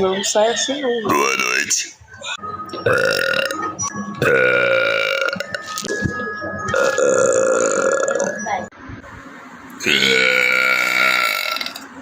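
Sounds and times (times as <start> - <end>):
woman belching: 2.9 - 5.6, 6.7 - 8.5, 9.8 - 11.8.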